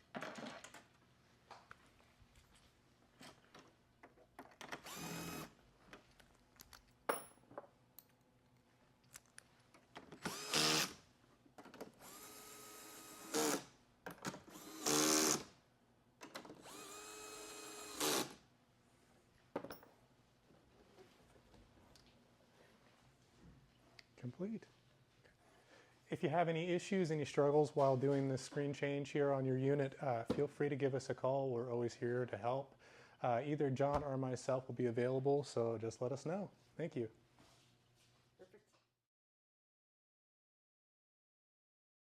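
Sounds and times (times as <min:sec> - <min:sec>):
drill-driver whining: 0:04.8 - 0:05.6, 0:10.2 - 0:11.0, 0:12.0 - 0:13.7, 0:14.5 - 0:15.5, 0:16.6 - 0:18.4.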